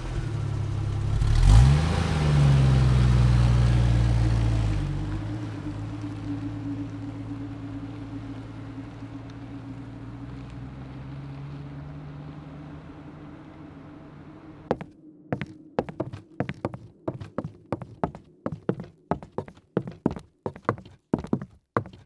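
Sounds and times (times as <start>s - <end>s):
vehicle engine running: 0.0s - 21.9s
sharp knocks or steps: 14.7s - 22.0s.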